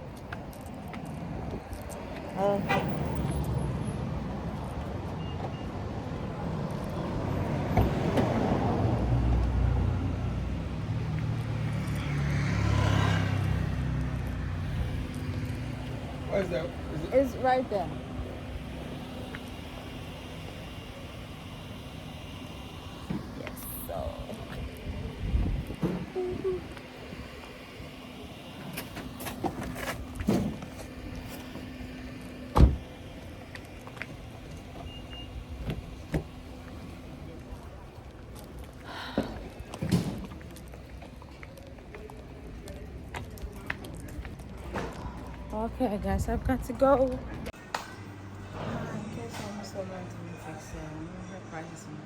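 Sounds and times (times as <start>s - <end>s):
car engine humming: 0.0s - 52.0s.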